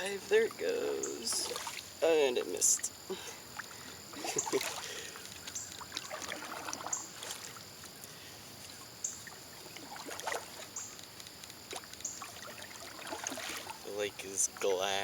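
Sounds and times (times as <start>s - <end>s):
paddle splashing in water: 1.3s - 1.9s, 3.6s - 7.7s, 9.2s - 10.8s, 11.6s - 13.9s.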